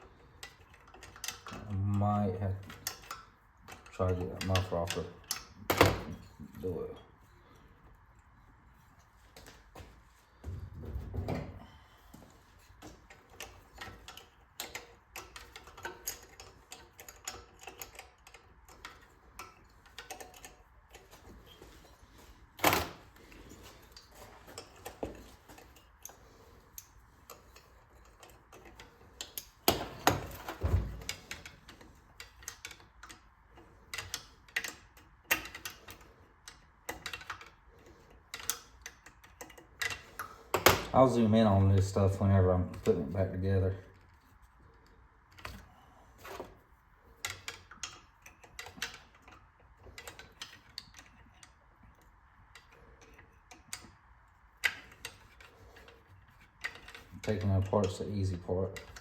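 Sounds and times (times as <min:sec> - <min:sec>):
hand tools clicking on metal: 0:12.7 - 0:21.7, 0:22.7 - 0:43.1, 0:54.6 - 0:59.0.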